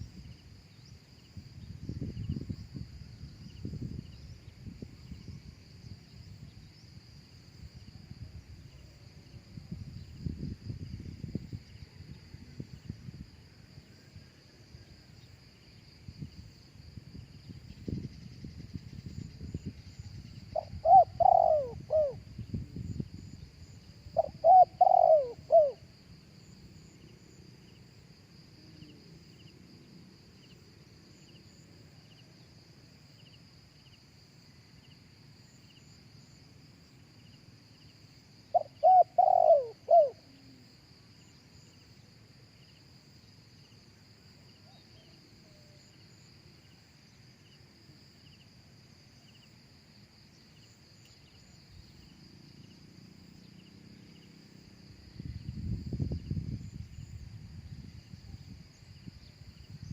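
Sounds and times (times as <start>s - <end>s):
high drone of insects: 0.0s - 59.9s
dove cooing: 20.5s - 22.2s, 24.2s - 25.8s, 38.5s - 40.6s.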